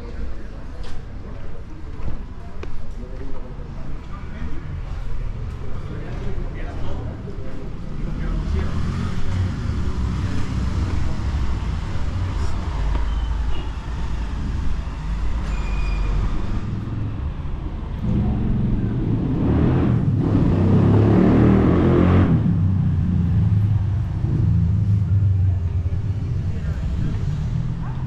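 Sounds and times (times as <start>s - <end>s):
rumble of passing cars: 0.0s - 28.0s
vehicle passing close: 16.1s - 28.0s.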